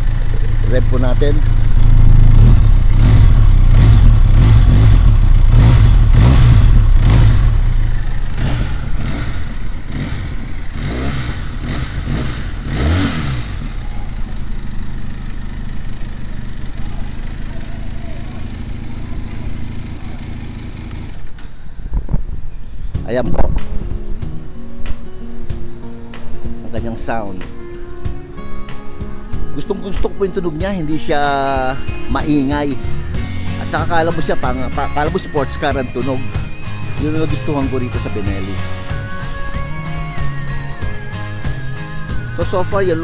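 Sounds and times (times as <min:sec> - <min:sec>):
motorcycle engine revving: 0:00.0 - 0:21.5, 0:32.5 - 0:39.6.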